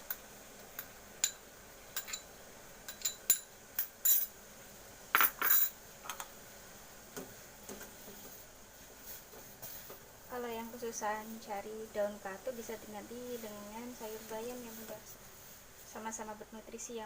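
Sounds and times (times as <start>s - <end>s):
spoon clinking against a bowl: 2.0s - 2.3s, 2.9s - 4.3s
spoon scraping: 2.0s - 2.3s.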